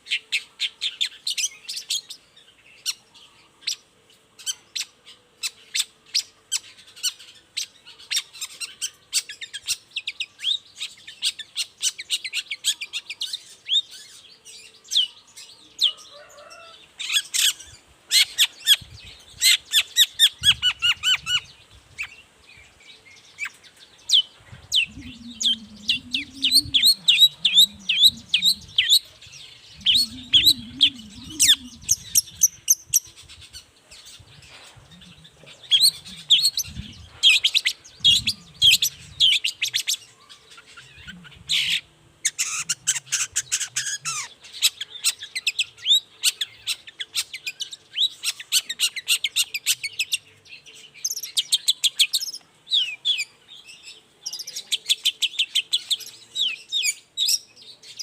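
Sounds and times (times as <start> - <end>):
bird singing sharp chirps: 23.2 - 33.6
low warbling: 24.4 - 32.7, 37.9 - 39.2.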